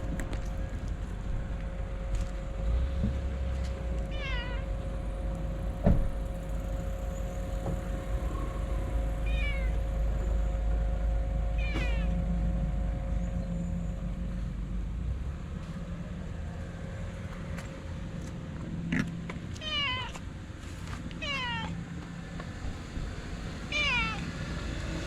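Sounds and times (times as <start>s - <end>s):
low background rumble: 0.0s - 25.0s
cat meowing: 4.1s - 4.8s, 9.2s - 9.8s, 11.6s - 12.2s, 19.6s - 20.2s, 21.2s - 21.8s, 23.7s - 24.3s
sharp thump: 5.8s - 6.3s.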